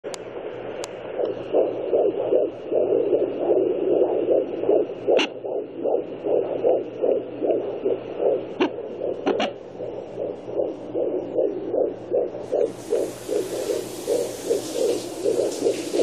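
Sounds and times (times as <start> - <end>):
fetal heartbeat pulse: 0.9 - 16.0
steady hiss: 11.9 - 16.0.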